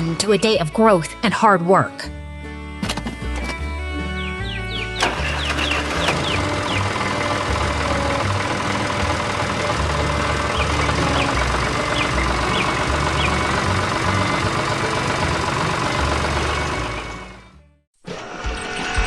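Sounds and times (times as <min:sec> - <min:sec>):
tractor engine idling: 0:02.6 - 0:17.6.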